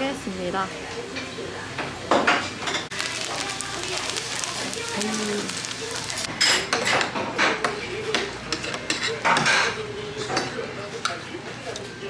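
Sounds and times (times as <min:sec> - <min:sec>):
cutlery clinking on dishes: 0:06.3 - 0:12.0.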